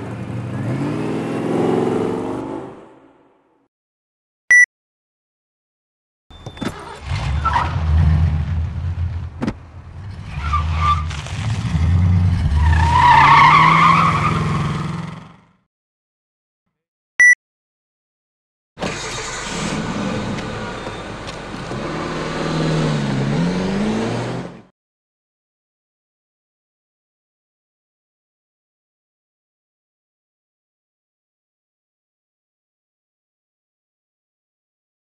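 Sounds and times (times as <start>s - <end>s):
car engine starting and revving: 0.0s - 2.9s, 6.7s - 15.2s, 18.8s - 24.7s.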